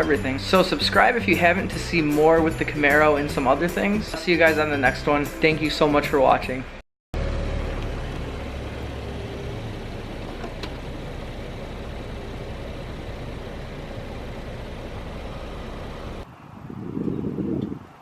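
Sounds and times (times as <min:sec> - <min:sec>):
car engine running: 0:07.2 - 0:16.2.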